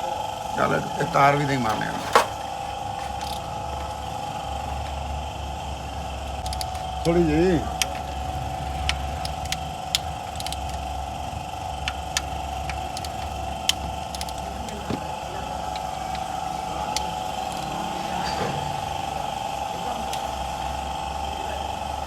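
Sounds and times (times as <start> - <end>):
steady mechanical hum: 0.0 - 22.0
hand tools clinking on metal: 0.6 - 4.0.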